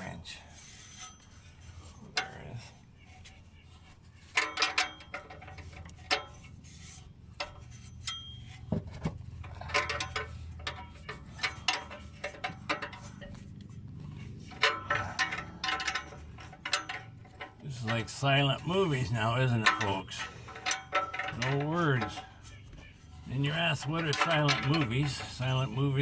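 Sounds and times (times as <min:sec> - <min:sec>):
low steady hum: 0:00.0 - 0:26.0
wrench clinking on metal parts: 0:00.6 - 0:26.0.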